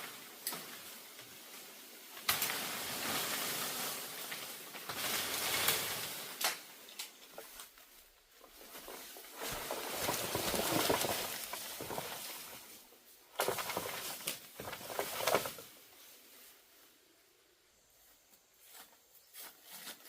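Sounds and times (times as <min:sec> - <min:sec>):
rustling handling noise: 0:00.2 - 0:16.6.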